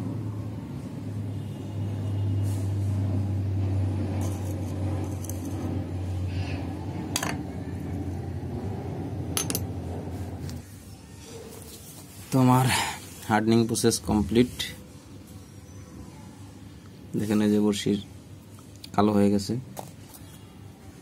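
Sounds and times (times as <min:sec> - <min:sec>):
low motor hum: 0:02.0 - 0:10.6.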